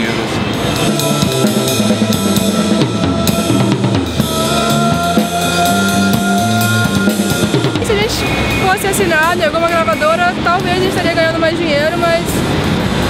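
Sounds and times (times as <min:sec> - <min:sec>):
held higher notes: 0:00.0 - 0:12.3
bass line: 0:00.4 - 0:10.5
drum kit beat: 0:00.5 - 0:11.4.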